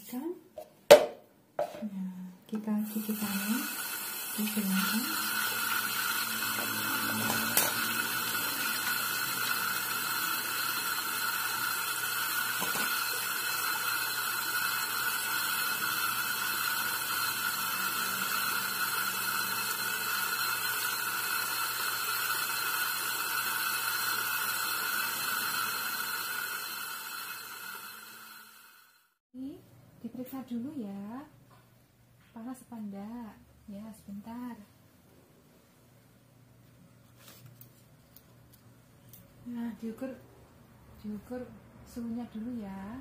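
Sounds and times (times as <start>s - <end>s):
water running from a tap: 2.8s - 28.9s.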